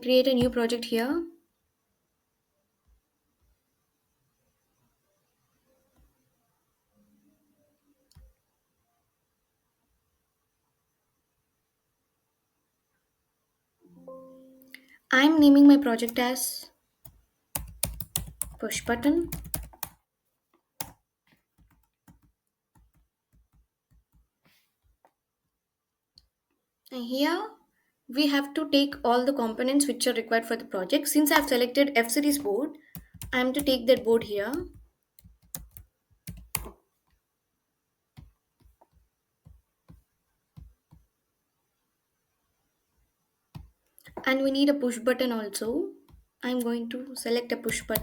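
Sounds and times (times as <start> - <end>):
faint keyboard typing: 8.0 - 8.4, 15.7 - 16.3, 17.0 - 25.2, 31.1 - 37.3, 38.1 - 41.2, 43.5 - 44.6, 47.5 - 48.0.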